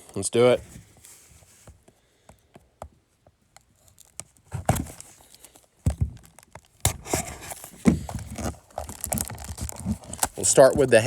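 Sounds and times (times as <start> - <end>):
plastic wrap crinkling and tearing: 3.8 - 11.0.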